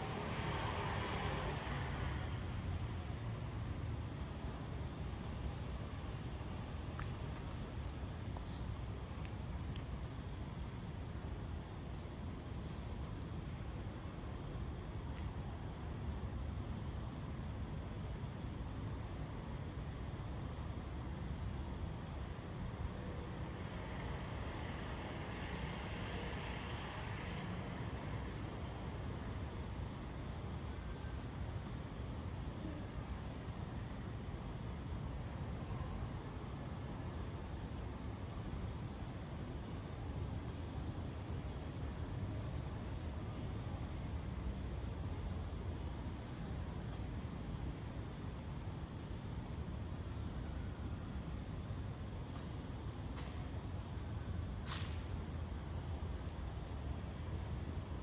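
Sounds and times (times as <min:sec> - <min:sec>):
crickets trilling: 0:00.0 - 0:11.8
low street ambience rumble: 0:00.0 - 0:58.0.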